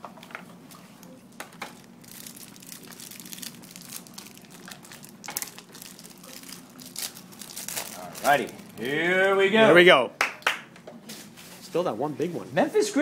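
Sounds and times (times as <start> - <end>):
plastic wrapping crinkling and tearing: 1.6 - 9.0.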